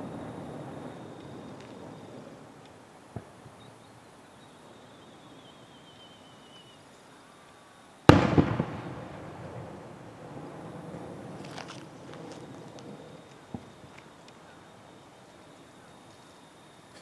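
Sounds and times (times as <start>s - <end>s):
firework bursting: 0.0s - 5.8s, 8.1s - 17.0s
faint wavering whistle: 3.5s - 7.8s.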